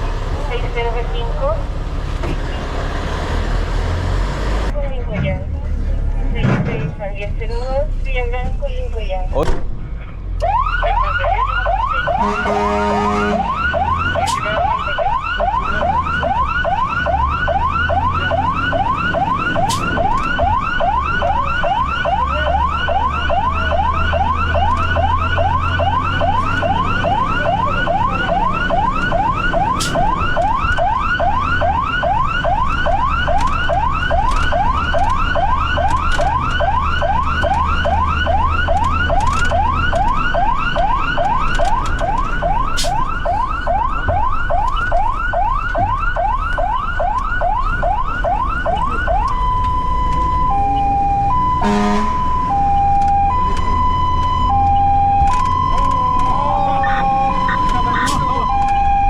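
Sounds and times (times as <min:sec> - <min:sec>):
truck rumble: 0:00.0 - 0:59.0
fire engine siren yelping: 0:10.4 - 0:59.0
horn tone: 0:12.0 - 0:13.6, 0:51.6 - 0:52.3.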